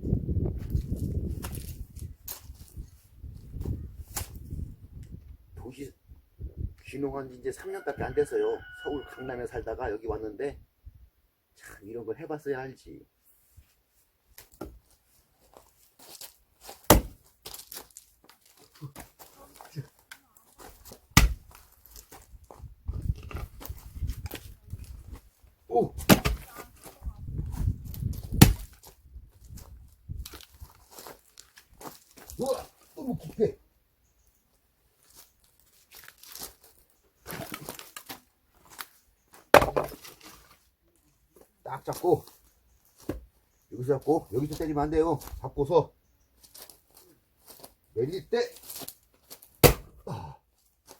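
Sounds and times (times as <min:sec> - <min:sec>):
axe hitting log: 0:16.8 - 0:17.3, 0:21.2 - 0:21.6, 0:26.0 - 0:26.5, 0:28.3 - 0:28.8, 0:39.5 - 0:40.0, 0:49.6 - 0:50.0
wood cracking and splintering: 0:16.9 - 0:19.0, 0:20.8 - 0:22.1, 0:26.0 - 0:26.7, 0:28.3 - 0:28.8.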